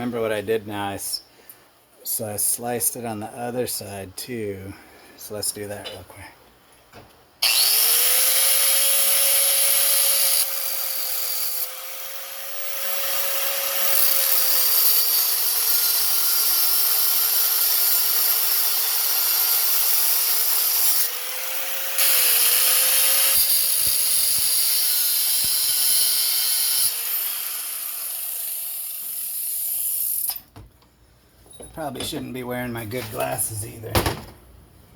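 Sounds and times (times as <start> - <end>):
power tool cutting steel: 7.4 - 30.4.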